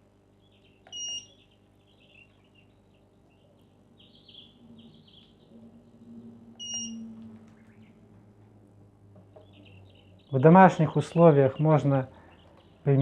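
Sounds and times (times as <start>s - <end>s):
faint birds chirping: 0.0s - 13.0s
low steady hum: 0.0s - 13.0s
short high-pitched beeps: 0.9s - 1.4s, 6.6s - 7.0s.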